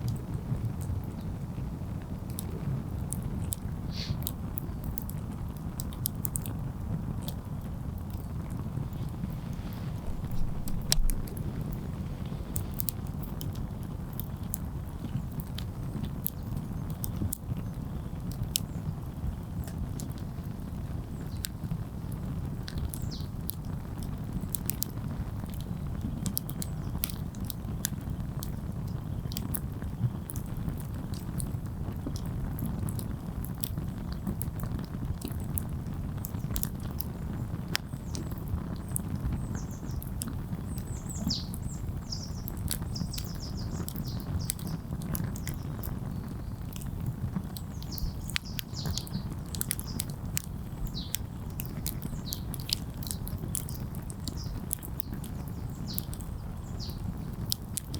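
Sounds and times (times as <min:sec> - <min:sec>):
low rush of fire: 0:00.0 - 0:16.2
campfire crackling and popping: 0:00.0 - 0:57.9.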